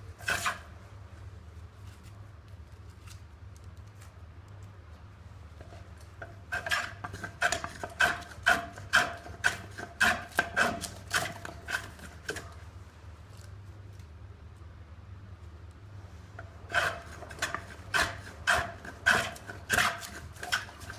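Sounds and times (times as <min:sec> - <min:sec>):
hand plane scraping wood: 0:00.2 - 0:00.7, 0:05.6 - 0:12.5, 0:16.7 - 0:20.9.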